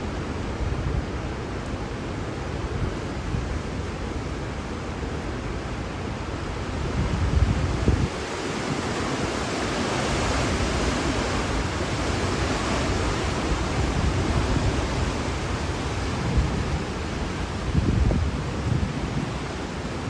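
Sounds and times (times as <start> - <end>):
wind buffeting microphone: 6.2 - 20.0.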